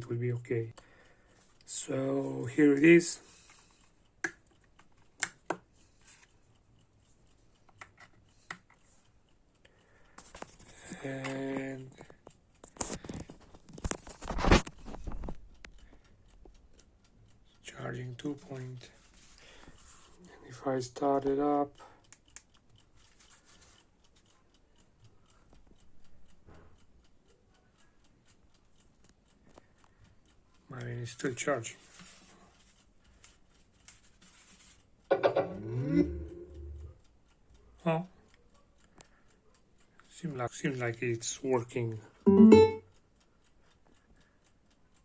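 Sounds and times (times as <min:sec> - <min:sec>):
light clicks and taps from handling: 0:00.0 - 0:16.9, 0:17.5 - 0:35.5, 0:38.0 - 0:42.1
soft rustle: 0:23.0 - 0:23.9, 0:31.7 - 0:34.9.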